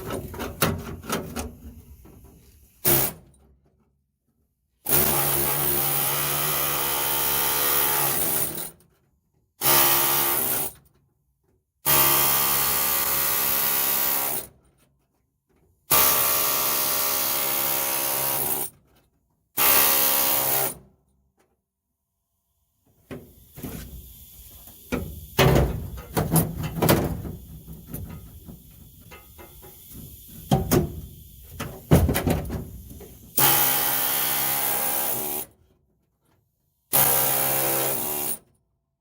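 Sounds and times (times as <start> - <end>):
power tool droning with hiss: 23.2 - 35.1.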